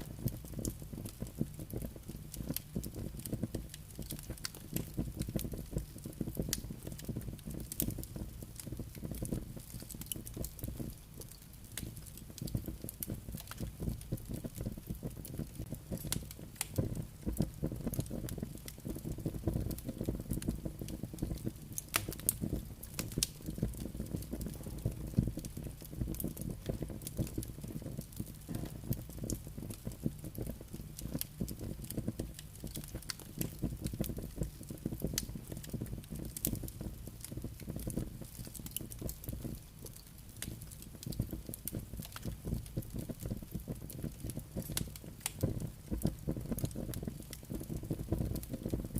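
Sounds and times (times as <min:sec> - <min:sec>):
campfire crackling and popping: 0:00.0 - 0:48.9
low rumble of flames: 0:00.0 - 0:48.9.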